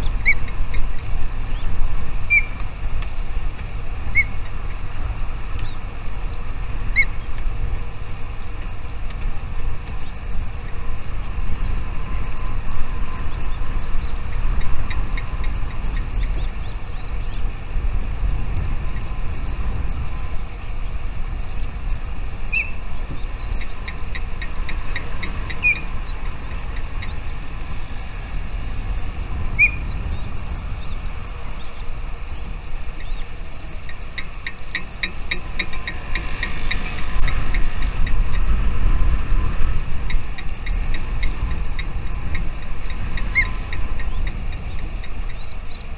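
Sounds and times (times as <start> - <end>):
small birds chirping: 0.0 - 3.2, 3.9 - 7.4, 9.8 - 17.9, 22.4 - 37.4, 40.7 - 45.9
steady low rumble: 0.0 - 45.9.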